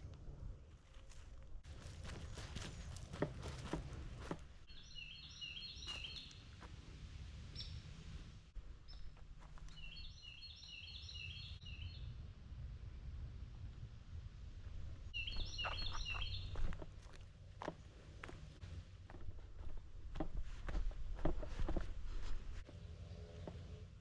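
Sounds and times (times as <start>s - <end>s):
songbird singing: 4.6s - 6.7s, 7.5s - 8.0s, 8.6s - 12.2s, 15.0s - 21.8s.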